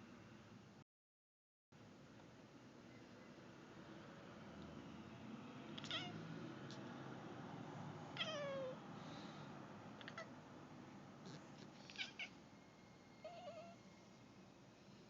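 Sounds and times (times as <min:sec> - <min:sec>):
cat chirping: 0:05.8 - 0:06.2, 0:08.2 - 0:08.8, 0:10.0 - 0:10.4, 0:11.2 - 0:12.4, 0:13.2 - 0:13.8
cat meowing: 0:05.8 - 0:06.2, 0:08.2 - 0:08.8, 0:10.0 - 0:10.3, 0:11.3 - 0:12.4, 0:13.2 - 0:13.8.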